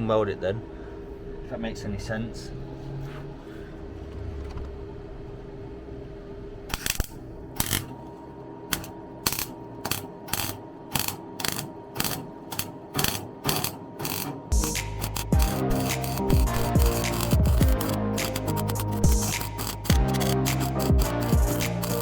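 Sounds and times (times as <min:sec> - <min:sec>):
tack welding bursts: 0:06.7 - 0:07.9, 0:08.7 - 0:22.0.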